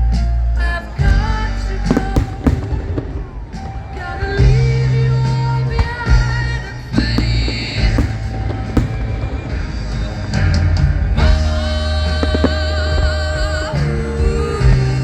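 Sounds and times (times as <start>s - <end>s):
fireworks bursting: 1.8s - 4.6s, 6.7s - 10.5s, 11.3s - 13.6s.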